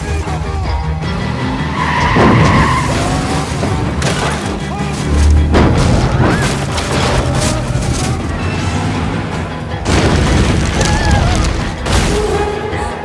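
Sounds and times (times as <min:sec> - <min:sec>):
dramatic orchestral music: 0:00.0 - 0:13.0
crashing debris: 0:02.1 - 0:08.5, 0:09.7 - 0:12.7
heavy crashes: 0:02.1 - 0:12.7
deep rumbling and booms: 0:09.7 - 0:12.3.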